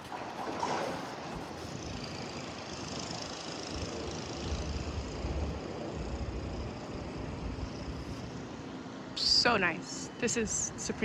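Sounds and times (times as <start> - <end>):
street noise: 0.0 - 11.0.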